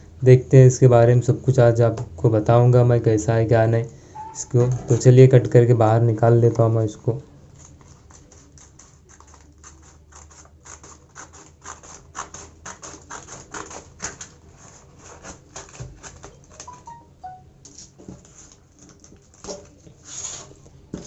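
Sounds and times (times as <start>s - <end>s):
brief squeaks: 4.1s - 5.0s
cardboard being cut open: 7.6s - 16.6s.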